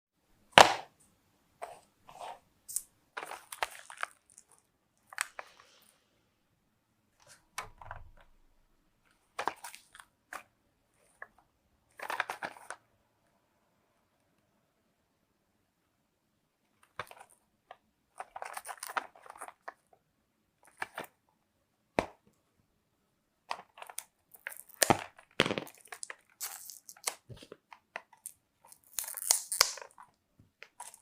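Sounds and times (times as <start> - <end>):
plastic and card crinkling: 2.7 - 5.8, 9.4 - 11.3, 11.9 - 12.8, 16.8 - 17.4, 18.1 - 19.9, 20.6 - 21.1, 23.5 - 31.0.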